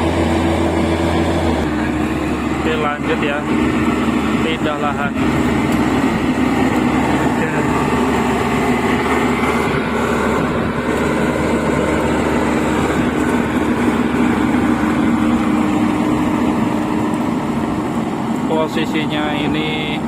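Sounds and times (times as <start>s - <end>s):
diesel engine droning under load: 0.0s - 20.0s.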